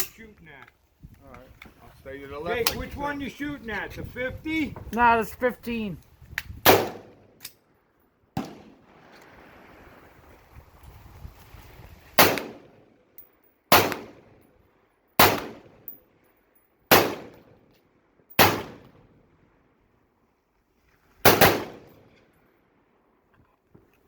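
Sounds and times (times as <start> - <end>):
rifle shots with echo: 6.6 - 7.4, 8.4 - 9.1, 12.2 - 12.8, 13.7 - 14.4, 15.2 - 15.9, 16.9 - 17.6, 18.4 - 19.1, 21.2 - 22.2.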